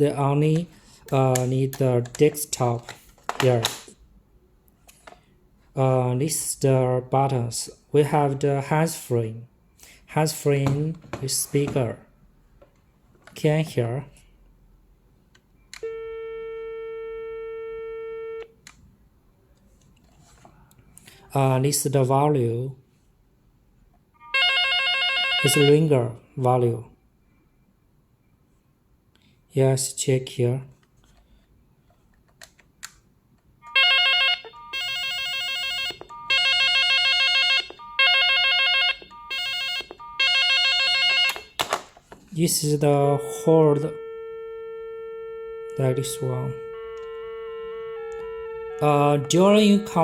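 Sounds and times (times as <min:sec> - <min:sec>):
telephone dial tone: 0:15.8 - 0:18.5, 0:24.2 - 0:25.8, 0:33.6 - 0:41.6, 0:43.1 - 0:50.0.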